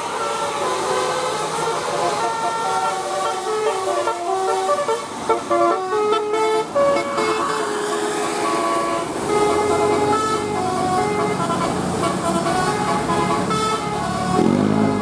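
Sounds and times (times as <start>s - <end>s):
bus multi-tone horn tune: 0.0s - 15.0s.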